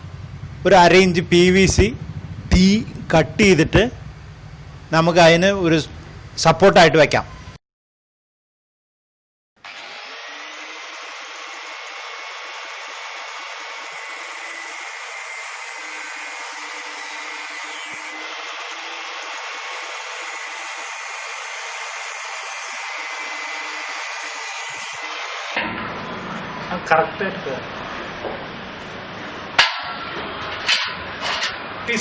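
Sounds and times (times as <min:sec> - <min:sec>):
power tool whining: 0:09.6 - 0:26.4.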